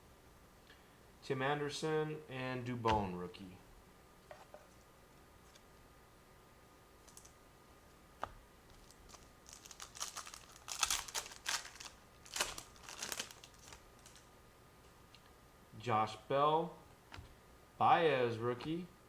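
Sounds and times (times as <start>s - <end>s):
cards rustling: 7.0s - 7.3s, 8.7s - 14.3s
foil wrapper crinkling: 8.7s - 14.3s.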